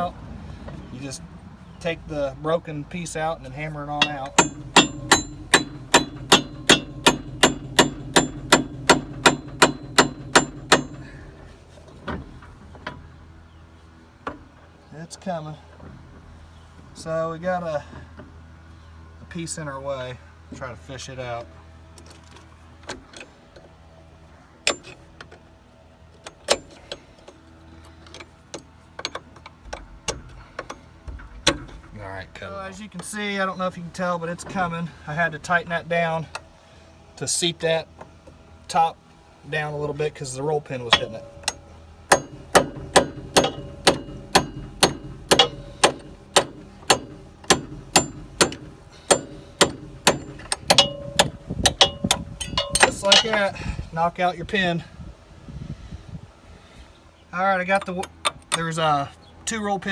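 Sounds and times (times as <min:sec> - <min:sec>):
low steady hum: 0:00.0 - 0:14.0, 0:29.6 - 0:55.4
hand tools clinking on metal: 0:03.9 - 0:11.3, 0:24.7 - 0:25.0, 0:40.8 - 0:53.5
ringing metal strikes: 0:04.0 - 0:11.3, 0:40.9 - 0:53.4.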